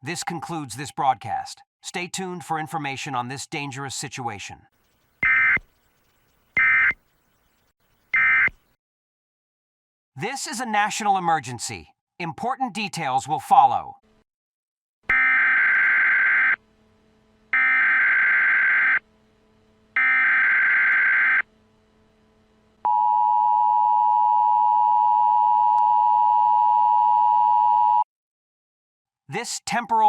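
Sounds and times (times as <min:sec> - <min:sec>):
data header bursts: 0:05.2 - 0:07.0.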